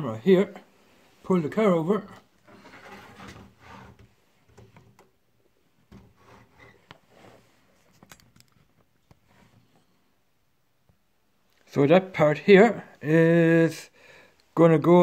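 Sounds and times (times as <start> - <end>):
plastic scraping and rustling: 2.4 - 5.1.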